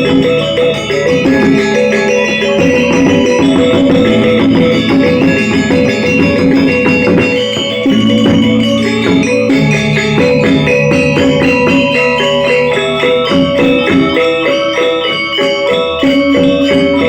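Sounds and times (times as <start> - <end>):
angklung ensemble playing: 0.0 - 17.0.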